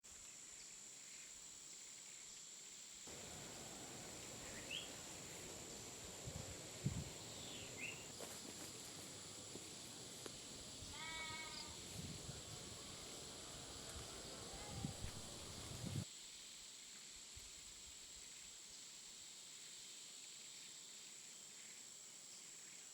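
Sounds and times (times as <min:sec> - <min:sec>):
steady high hiss: 0:00.1 - 0:22.9
rising bird chirps: 0:03.1 - 0:05.8.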